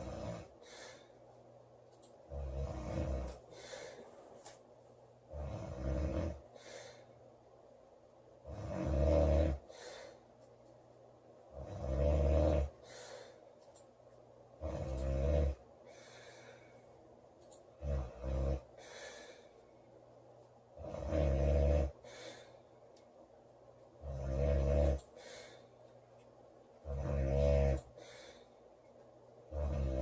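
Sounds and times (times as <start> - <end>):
woman snoring loudly: 0.0 - 0.5, 2.3 - 3.4, 5.3 - 6.4, 8.4 - 9.6, 11.6 - 12.7, 14.6 - 15.6, 17.8 - 18.7, 20.8 - 22.0, 24.0 - 25.0, 26.8 - 27.8, 29.5 - 30.0
faint airy breath: 0.0 - 1.4, 3.4 - 4.5, 6.5 - 7.4, 9.6 - 10.5, 12.8 - 13.8, 15.8 - 17.1, 18.7 - 20.0, 22.0 - 22.9, 25.1 - 26.0, 27.9 - 28.8.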